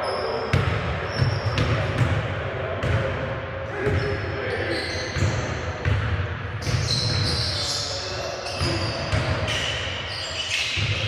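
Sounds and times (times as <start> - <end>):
sneakers squeaking: 0.0 - 2.2, 3.8 - 11.0
players' voices: 0.0 - 11.0
ball bouncing on hardwood court: 0.5 - 2.2, 5.2 - 7.4, 8.6 - 9.5.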